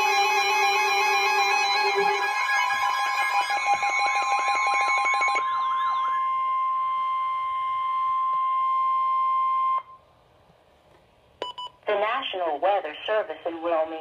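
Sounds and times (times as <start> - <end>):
warbling siren-like tones: 0.0 - 9.8
loud alert beep tone: 2.4 - 9.9.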